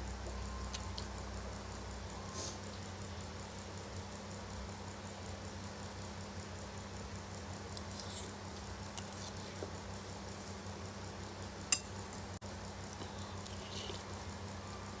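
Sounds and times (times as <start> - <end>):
cutlery clinking on a bowl: 11.7 - 12.2.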